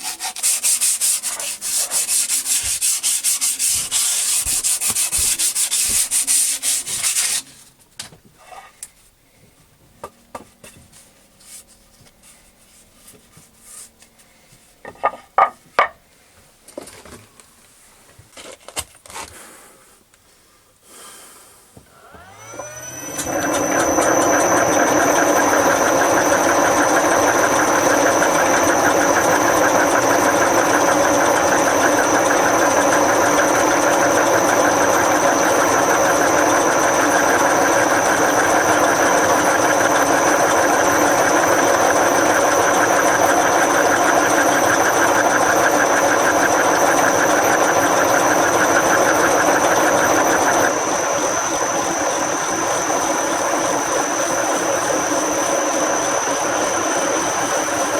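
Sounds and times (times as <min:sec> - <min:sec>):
machine tool whine and buzz: 0:21.9 - 0:57.9.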